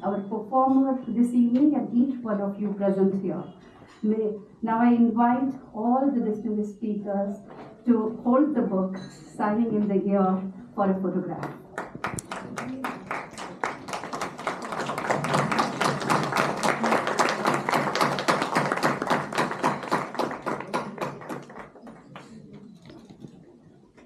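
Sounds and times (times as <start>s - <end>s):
audience applauding: 11.8s - 22.6s.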